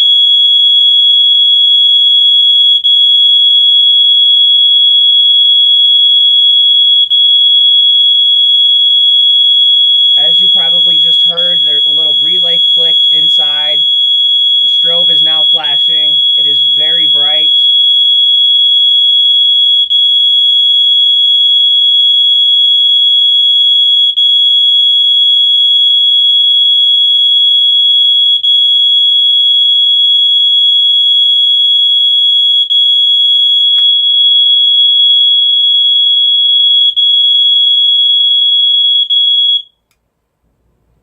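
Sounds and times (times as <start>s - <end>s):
high-pitched alarm tone: 3.8s - 20.4s.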